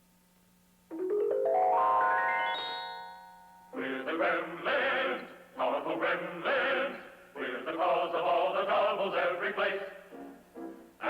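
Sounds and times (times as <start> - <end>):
musical backing: 0.9 - 4.1
men singing comic song: 3.8 - 10.0.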